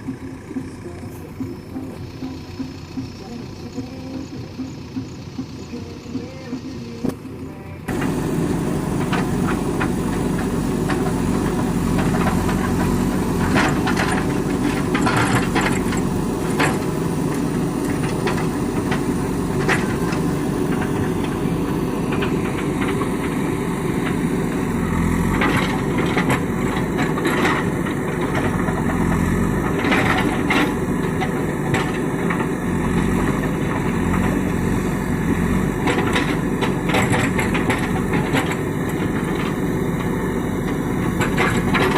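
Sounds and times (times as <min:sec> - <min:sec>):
diesel engine running: 0:00.0 - 0:41.9
knocks and rattles: 0:07.9 - 0:23.4, 0:24.0 - 0:34.8, 0:35.7 - 0:39.7, 0:40.7 - 0:41.9.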